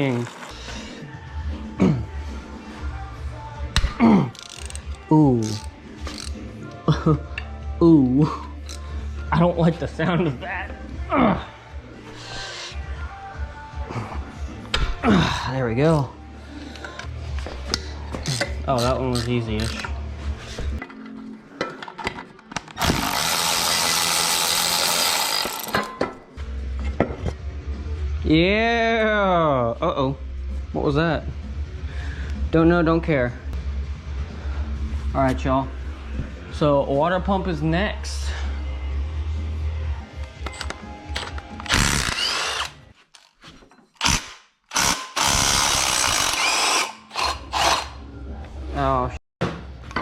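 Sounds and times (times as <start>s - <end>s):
tools clicking and knocking: 3.8s - 6.4s, 20.8s - 23.9s, 24.8s - 26.2s, 40.2s - 45.2s
power tool running in bursts: 22.8s - 25.7s
power tool running: 22.8s - 25.8s, 41.7s - 42.8s, 44.0s - 48.0s.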